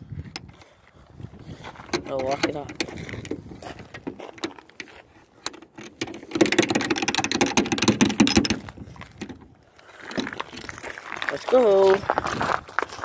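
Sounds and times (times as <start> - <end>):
lock hardware rattling: 1.9 - 10.9.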